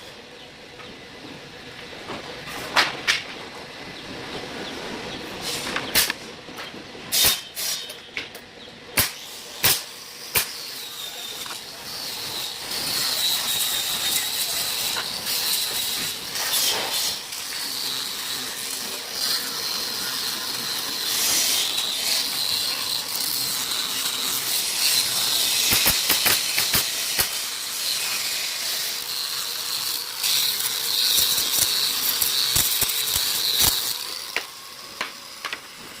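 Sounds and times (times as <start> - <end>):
woodworking machine cutting with whine: 10.7 - 36.0.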